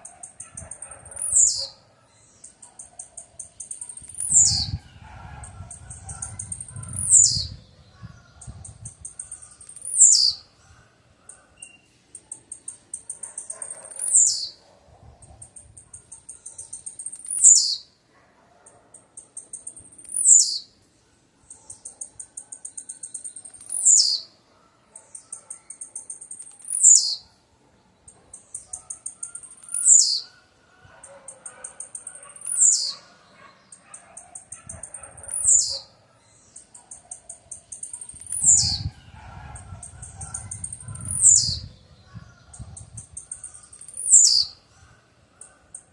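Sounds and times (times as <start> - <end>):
bird singing: 0.0 - 14.6, 15.2 - 18.0, 18.8 - 45.9.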